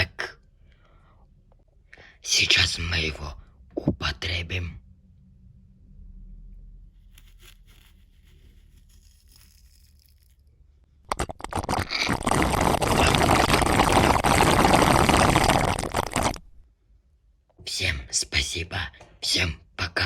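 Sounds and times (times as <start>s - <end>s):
faint low hum: 0.0s - 11.1s.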